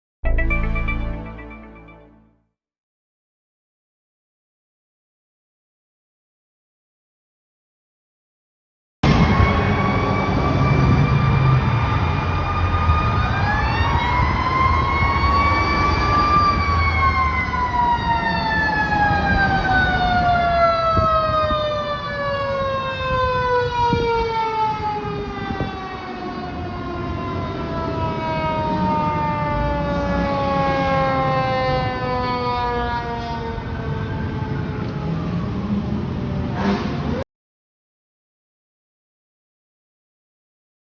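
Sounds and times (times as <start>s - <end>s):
second siren tone: 9.0s - 37.2s.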